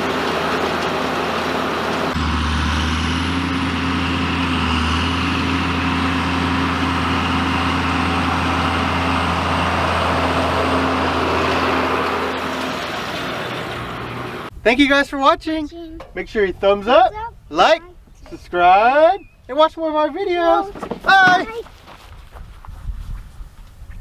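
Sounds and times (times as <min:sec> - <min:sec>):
tractor engine running: 0:00.0 - 0:14.6, 0:20.2 - 0:22.4.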